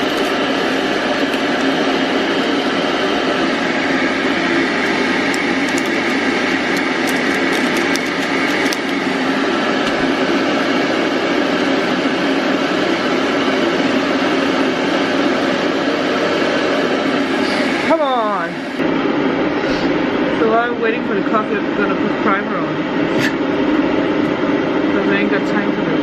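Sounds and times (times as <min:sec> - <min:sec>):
electric kettle rushing: 0:00.0 - 0:20.4.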